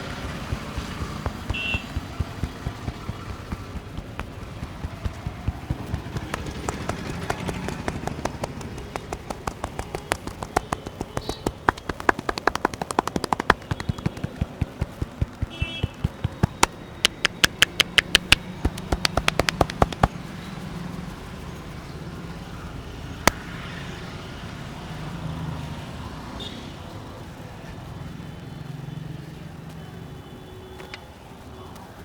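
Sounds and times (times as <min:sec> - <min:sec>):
hand slaps and claps: 0:00.0 - 0:20.1
sharp snap: 0:00.0 - 0:20.1
passing traffic hum: 0:00.0 - 0:30.1.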